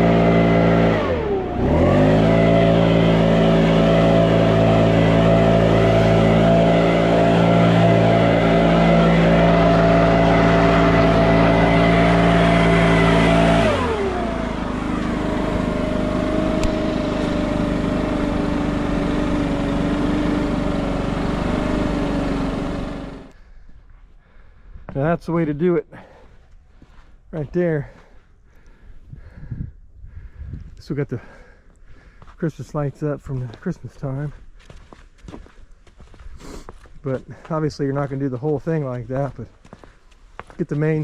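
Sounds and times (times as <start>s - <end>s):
small engine revving: 0.0s - 23.4s.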